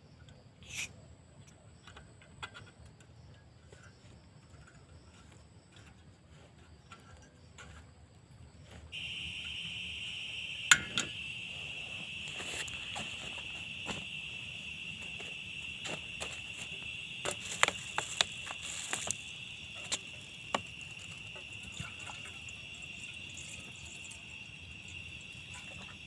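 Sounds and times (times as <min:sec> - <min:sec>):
high-pitched insect chorus: 0:00.1 - 0:01.0, 0:08.9 - 0:26.0.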